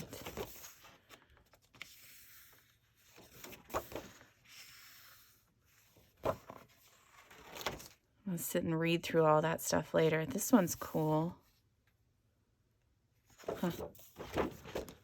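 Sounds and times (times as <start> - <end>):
paper pages turning: 0.0 - 8.0, 13.4 - 15.0.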